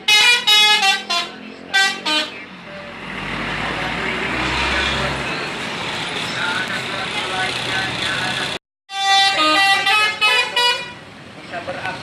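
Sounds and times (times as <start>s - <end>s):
bus musical horn: 0.0s - 2.5s, 8.9s - 11.0s
bus driving past: 1.3s - 8.6s.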